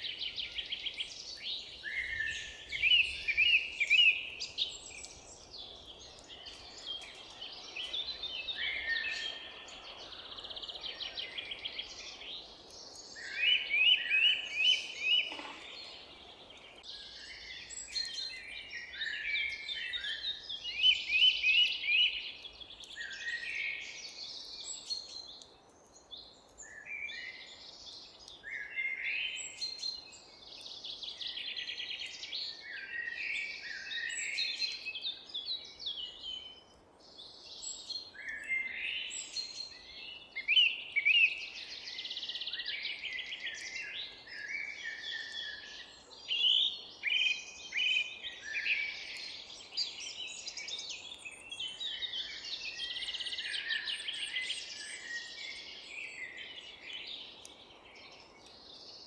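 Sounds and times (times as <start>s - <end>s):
faint outdoor hiss: 0.0s - 59.0s
songbirds singing: 0.0s - 59.0s.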